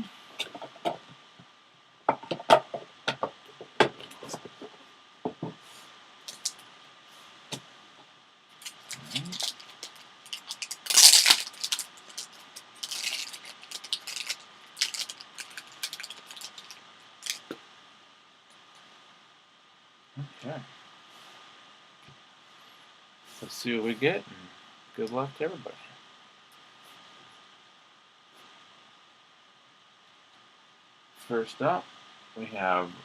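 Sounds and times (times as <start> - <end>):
cards and packaging clicks and rustles: 6.3 - 6.6, 8.6 - 17.6.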